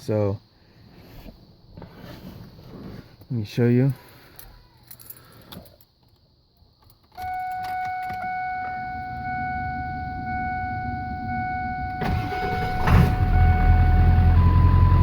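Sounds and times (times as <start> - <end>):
electronic warning tone: 7.2 - 15.0
diesel engine cranking and starting: 11.8 - 15.0.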